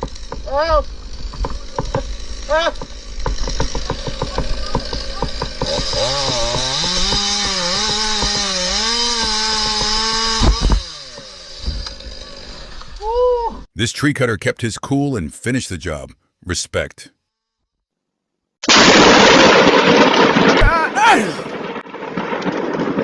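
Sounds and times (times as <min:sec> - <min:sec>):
chainsaw revving: 0:05.6 - 0:12.6.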